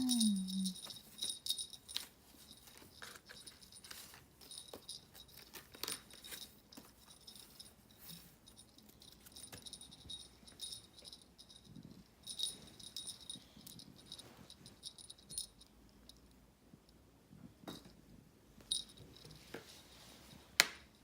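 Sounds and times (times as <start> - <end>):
rustling: 0.0 - 15.4
small jingle bell tinkling: 0.0 - 16.3, 18.6 - 19.5.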